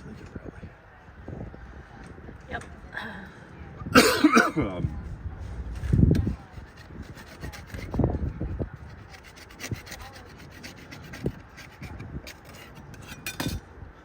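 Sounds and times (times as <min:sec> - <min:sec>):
hand tool scraping hatch frame: 0:06.5 - 0:13.6.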